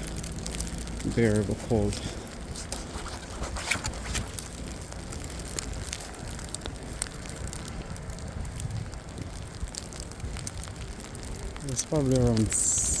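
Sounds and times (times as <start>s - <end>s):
wind rumble on microphone: 0.0s - 13.0s
footsteps crunching in snow: 2.5s - 4.4s.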